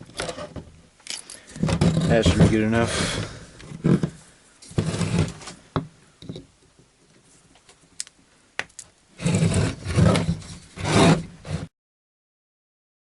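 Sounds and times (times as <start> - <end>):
pliers scraping and creaking: 0.0 - 5.6
tool scraping on screw: 1.5 - 2.6, 3.7 - 5.6, 9.2 - 11.7.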